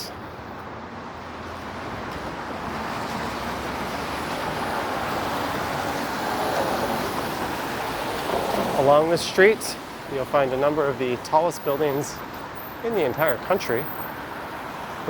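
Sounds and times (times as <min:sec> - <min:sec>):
tyres hissing on wet road: 0:02.6 - 0:12.9.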